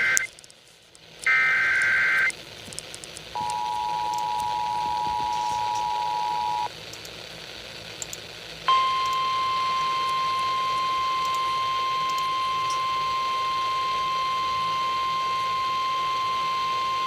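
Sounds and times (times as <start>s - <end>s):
screeching digital header data: 0.0s - 0.3s, 1.3s - 2.4s, 8.7s - 17.0s
radio hiss: 0.0s - 17.0s.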